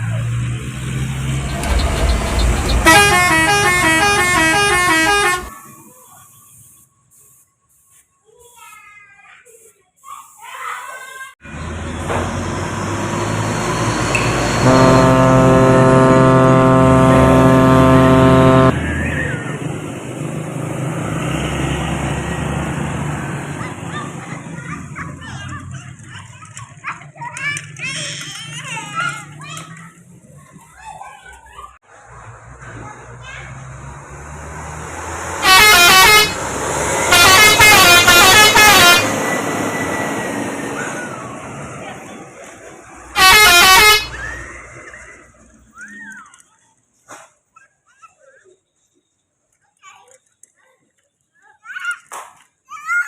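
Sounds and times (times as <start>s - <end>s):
heavy vehicle engine: 0.0s - 5.7s, 11.4s - 26.1s, 31.8s - 45.7s
air horn long blast: 2.4s - 5.6s, 13.9s - 18.8s, 35.4s - 36.4s, 37.0s - 39.3s, 43.2s - 44.2s.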